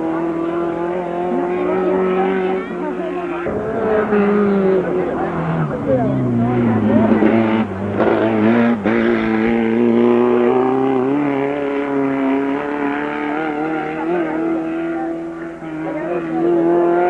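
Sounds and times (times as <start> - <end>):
race car engine pulling hard: 0.0 - 17.0.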